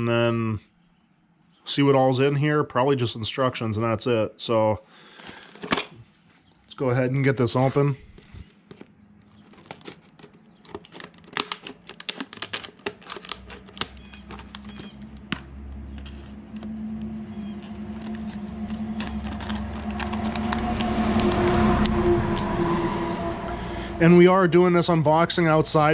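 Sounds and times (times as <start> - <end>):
packaging crinkling and tearing: 7.5 - 22.5
low steady hum: 14.7 - 25.9.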